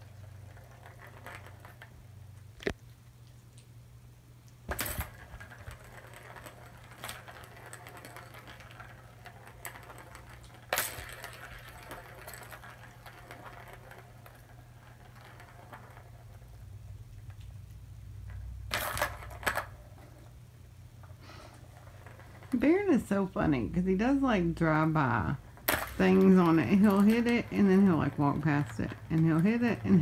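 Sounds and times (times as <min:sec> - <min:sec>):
toy clicking and rattling: 0:04.7 - 0:17.6, 0:23.8 - 0:30.0.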